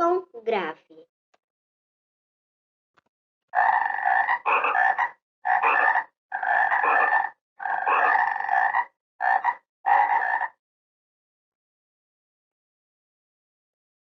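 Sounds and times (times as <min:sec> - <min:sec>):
frog croaking: 0:03.6 - 0:10.6.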